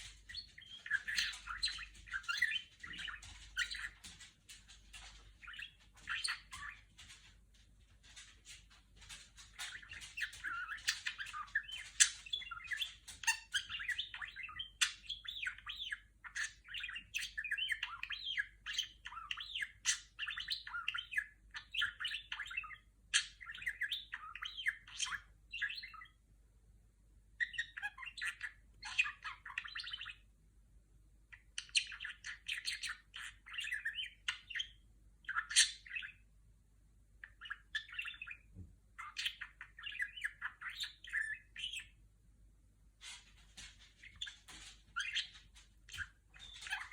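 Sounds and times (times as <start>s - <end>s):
budgerigar warbling and chattering: 0.2s - 4.1s, 9.6s - 26.1s, 31.3s - 36.2s, 37.2s - 42.0s, 44.1s - 46.9s.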